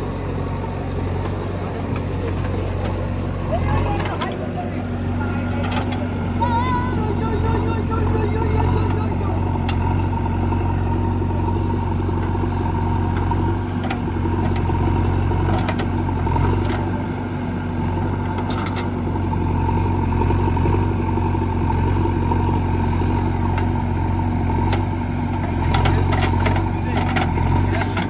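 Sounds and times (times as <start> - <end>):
diesel engines running: 0.0 - 28.0
faint clanks: 5.6 - 6.1, 24.7 - 28.0.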